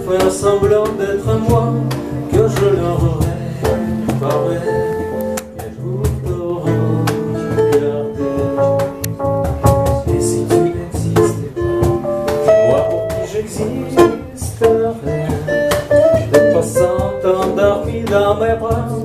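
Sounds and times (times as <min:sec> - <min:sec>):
acoustic guitar chords: 0:00.0 - 0:19.0
sustained melody line: 0:00.0 - 0:19.0.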